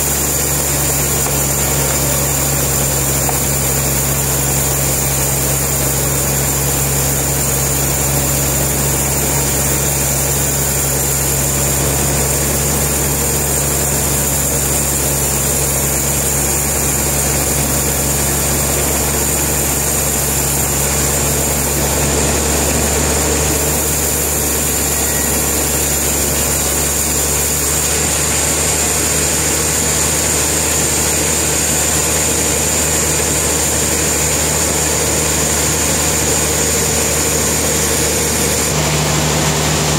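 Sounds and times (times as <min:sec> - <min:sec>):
sawmill machinery droning: 0:00.0 - 0:39.9
faint high whine: 0:23.2 - 0:27.4.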